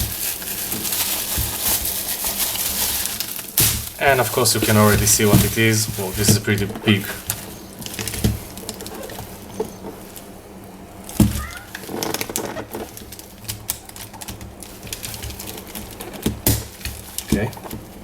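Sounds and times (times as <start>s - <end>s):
packaging clicks and rustles: 0.0s - 18.0s.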